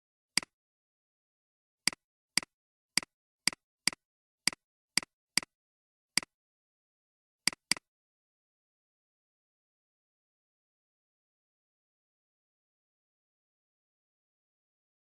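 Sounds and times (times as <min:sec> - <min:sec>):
computer mouse clicking: 0:01.9 - 0:05.6, 0:07.5 - 0:07.9.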